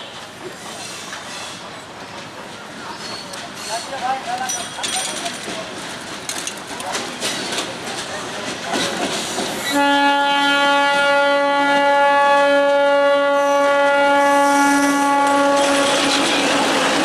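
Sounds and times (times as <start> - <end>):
train rushing and clattering past: 0.0 - 9.8, 14.8 - 17.0
locomotive horn blast: 9.7 - 16.2.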